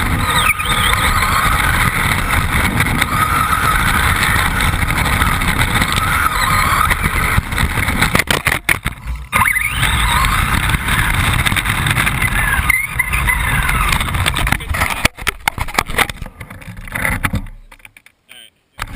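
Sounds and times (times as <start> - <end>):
rc buggy motor whine: 0.0 - 15.0
buggy rattling over rough ground: 0.0 - 18.2.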